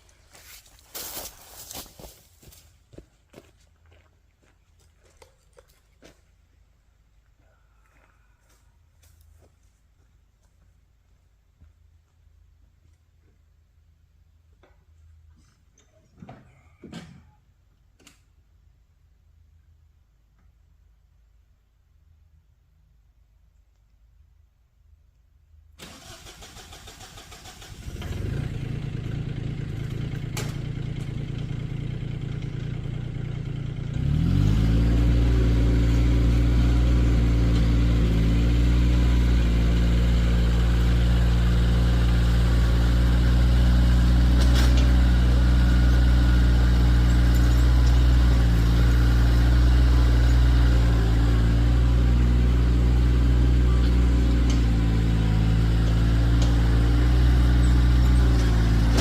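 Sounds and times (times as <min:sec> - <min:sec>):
tractor diesel engine: 0:25.8 - 0:59.0.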